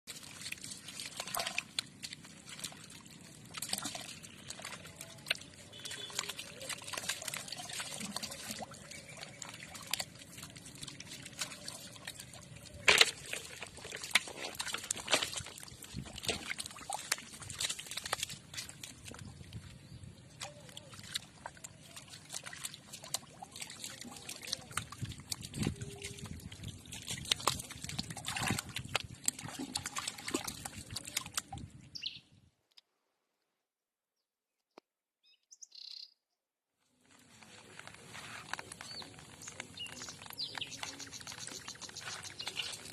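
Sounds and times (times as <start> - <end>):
water sloshing and trickling: 0.0 - 32.2, 36.9 - 42.9.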